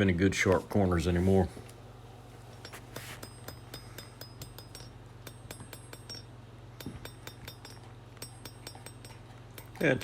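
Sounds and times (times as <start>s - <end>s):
steady low hum: 0.0s - 10.0s
hammer striking steel on anvil: 2.6s - 9.7s.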